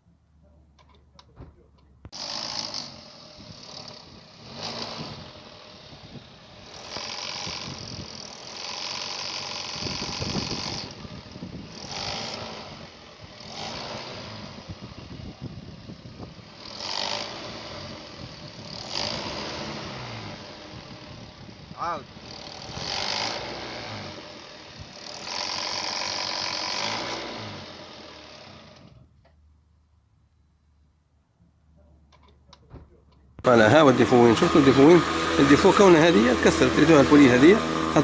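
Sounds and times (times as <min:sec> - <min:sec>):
car engine running: 0:02.0 - 0:28.9, 0:33.4 - 0:38.0
mechanical rattling: 0:02.1 - 0:29.0.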